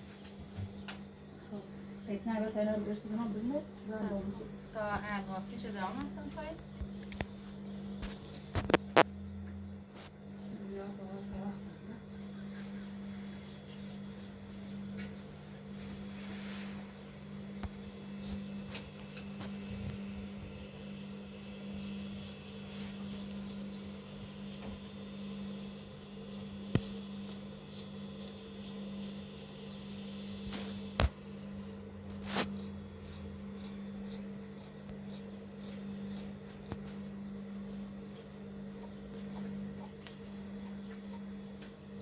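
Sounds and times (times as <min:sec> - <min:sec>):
steady low hum: 0:00.0 - 0:42.0
scissors snipping cloth: 0:30.5 - 0:42.0.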